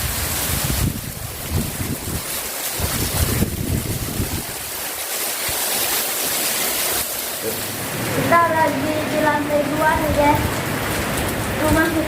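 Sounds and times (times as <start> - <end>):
wind buffeting microphone: 0.0 - 5.6, 8.0 - 12.0
heavy rain hissing: 0.0 - 12.0.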